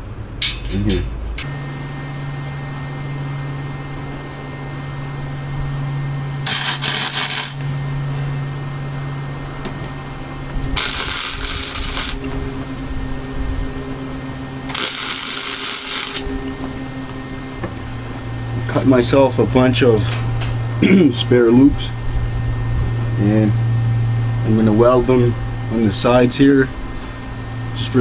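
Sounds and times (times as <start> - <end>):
steady low hum: 0.0 - 28.0
welding arc crackling: 6.4 - 8.0, 10.8 - 12.7, 14.7 - 16.5.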